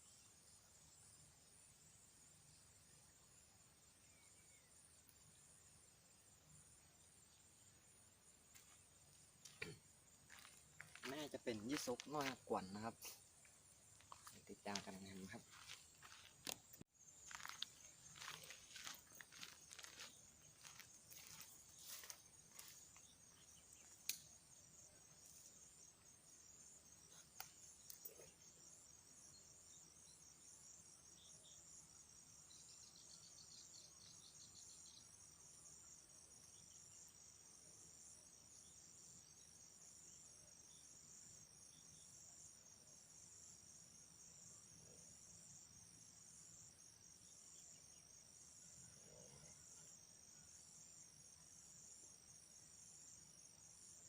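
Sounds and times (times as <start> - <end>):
insects chirping: 0.0 - 54.0.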